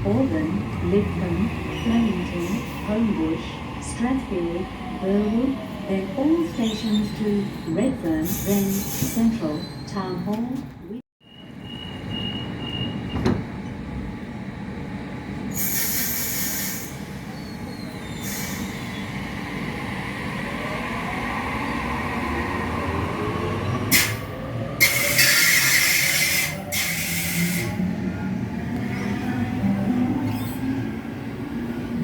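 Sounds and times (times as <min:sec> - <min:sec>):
train rumbling on rails: 0:00.0 - 0:32.0.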